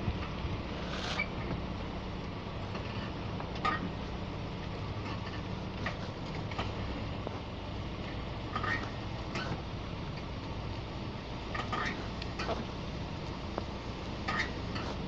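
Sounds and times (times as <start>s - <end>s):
low rumble: 0.0s - 15.0s
car suspension squeaking: 0.2s - 1.7s, 2.6s - 7.3s, 8.0s - 10.4s, 11.4s - 12.8s, 14.2s - 15.0s.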